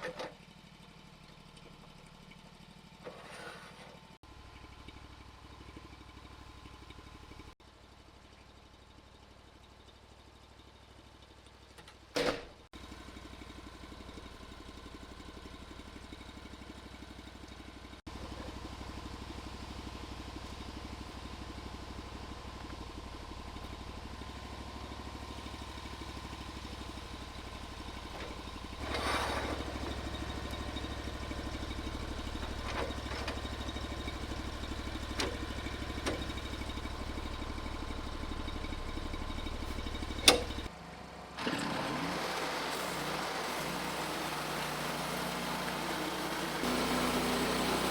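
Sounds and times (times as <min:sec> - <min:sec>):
gasoline engine running: 0:12.8 - 0:47.9.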